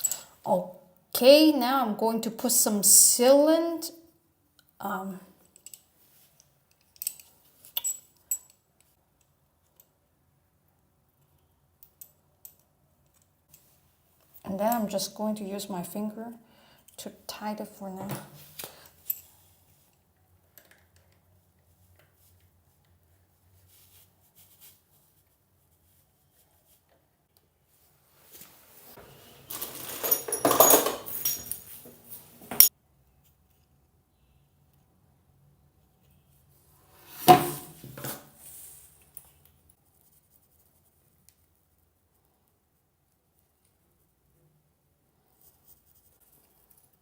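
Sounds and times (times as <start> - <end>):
metal parts clattering: 29.4 - 31.9.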